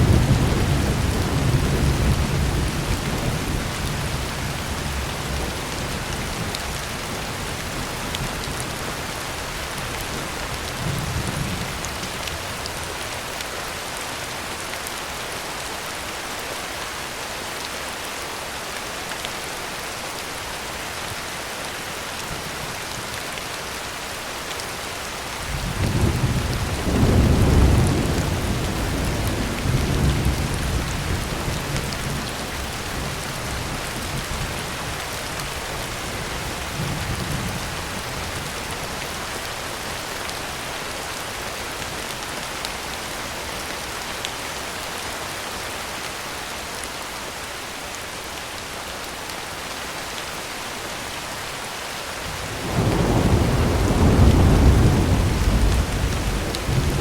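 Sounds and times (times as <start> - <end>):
rain drumming on a tin roof: 0.0 - 57.0
thunder rumbling: 52.4 - 57.0.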